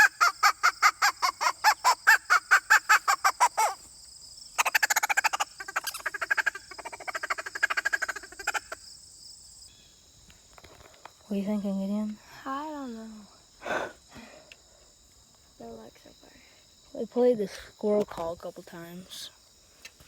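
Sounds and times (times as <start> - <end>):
squirrel barking calls: 0.0 - 3.9, 4.5 - 9.0
high insect buzz: 0.0 - 20.0.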